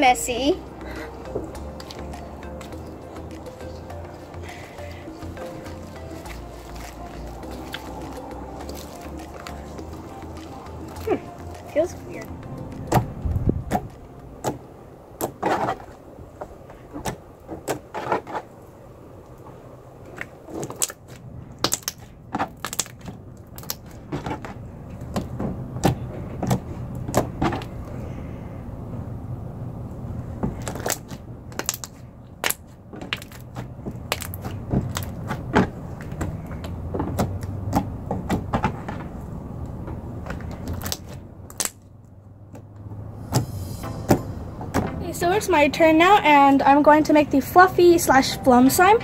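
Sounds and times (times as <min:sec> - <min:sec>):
low steady hum: 0:00.0 - 0:49.0
slime squishing with sharp pops: 0:20.2 - 0:24.1, 0:30.5 - 0:36.3.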